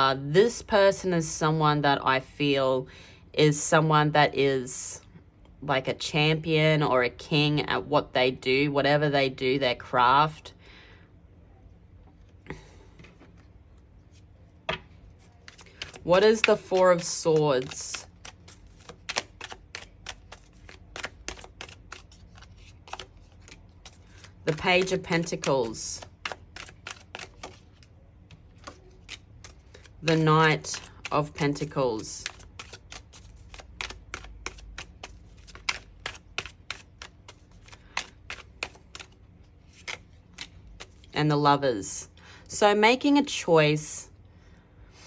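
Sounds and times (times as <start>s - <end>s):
cards being shuffled: 15.1s - 41.1s.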